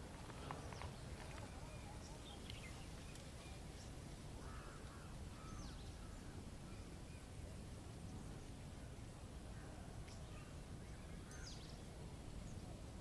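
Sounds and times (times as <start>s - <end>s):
faint bird calls: 0.3s - 7.3s.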